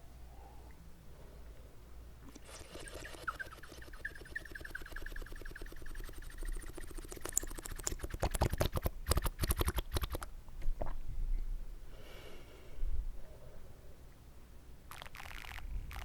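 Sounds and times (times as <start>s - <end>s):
wet mouth slurps and clicks: 2.3s - 10.2s, 14.9s - 16.0s.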